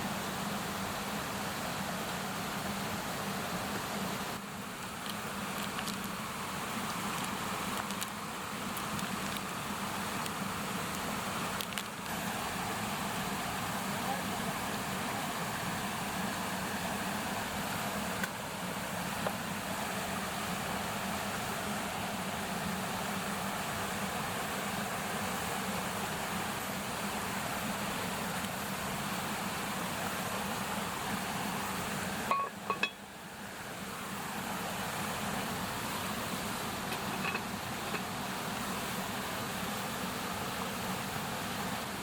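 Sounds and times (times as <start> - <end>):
sausages sizzling on a grill: 4.4 - 13.3
metal clinks: 32.3 - 33.0.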